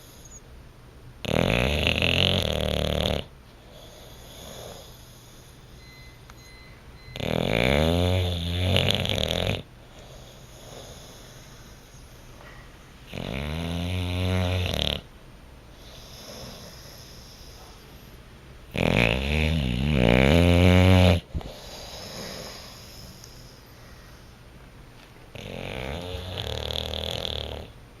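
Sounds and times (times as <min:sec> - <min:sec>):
dog snoring: 0:01.2 - 0:06.0, 0:07.0 - 0:15.1, 0:15.7 - 0:18.1, 0:18.7 - 0:24.3, 0:25.3 - 0:27.8
dog breathing: 0:01.3 - 0:15.1, 0:15.7 - 0:24.5.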